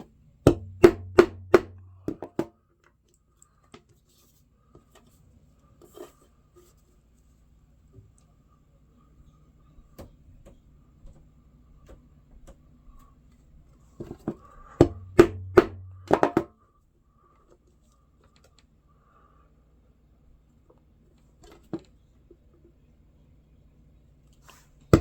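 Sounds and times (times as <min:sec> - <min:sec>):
sharp knocks: 0:00.5 - 0:02.5, 0:14.8 - 0:16.5.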